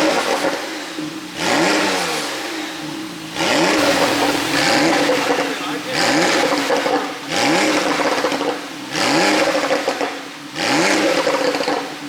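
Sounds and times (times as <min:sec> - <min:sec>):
sports car engine revving: 0:00.1 - 0:12.0
exhaust popping and crackling: 0:03.4 - 0:08.4.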